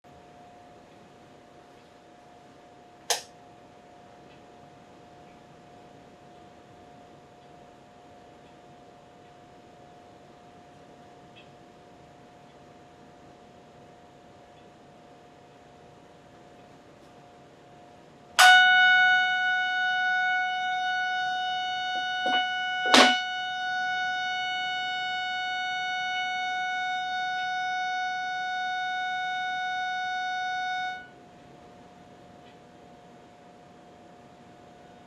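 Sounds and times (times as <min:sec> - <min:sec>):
short clicks: 0:03.1 - 0:03.3
buzzy loudspeaker tone: 0:18.4 - 0:31.2.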